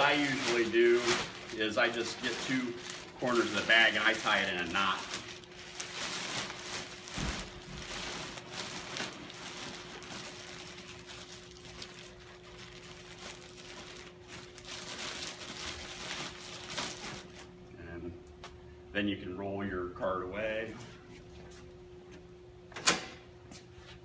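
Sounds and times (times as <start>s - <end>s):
plastic bag crinkling and rustling: 0.0s - 17.5s
faint steady hum: 0.0s - 24.0s.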